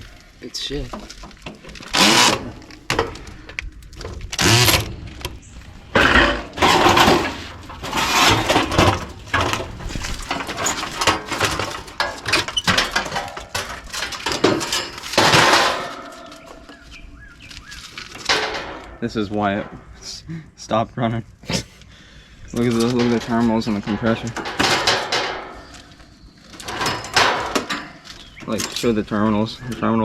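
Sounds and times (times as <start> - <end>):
sheet metal clattering and banging: 4.0 - 16.7, 18.1 - 20.0, 22.8 - 26.0, 26.6 - 29.0.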